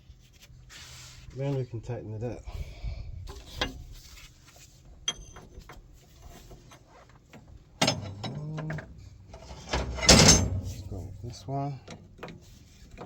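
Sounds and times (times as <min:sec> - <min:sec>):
tool handling noise: 0:05.1 - 0:13.0.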